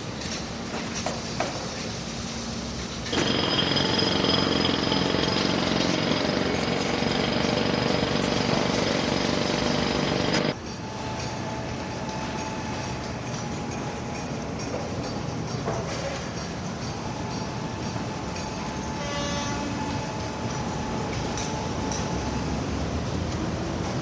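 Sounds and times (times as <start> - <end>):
machine rattling with high whine: 3.0 - 13.4.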